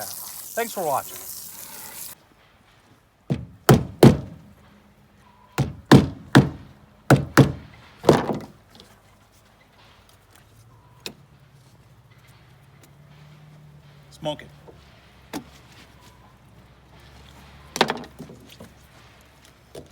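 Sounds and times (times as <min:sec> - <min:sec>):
heavy chopping thunks: 0:03.3 - 0:04.4, 0:05.6 - 0:08.5.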